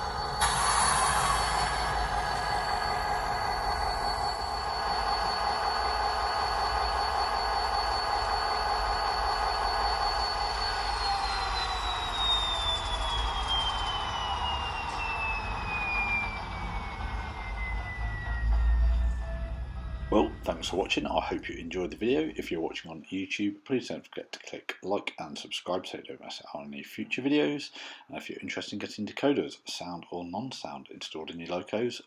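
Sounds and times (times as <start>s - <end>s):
model diesel locomotive engine whine: 0.0s - 22.4s.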